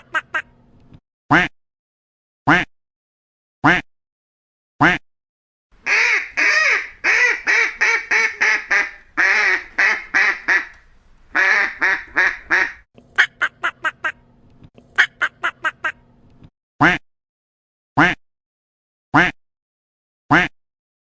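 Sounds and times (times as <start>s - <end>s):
duck quacking: 5.8s - 12.8s.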